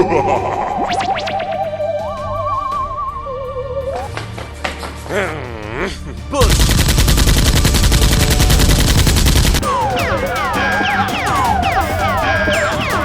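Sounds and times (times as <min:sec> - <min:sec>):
falling whistle-like tones: 0:00.0 - 0:04.4, 0:09.6 - 0:13.0
rapid automatic gunfire: 0:06.4 - 0:13.0.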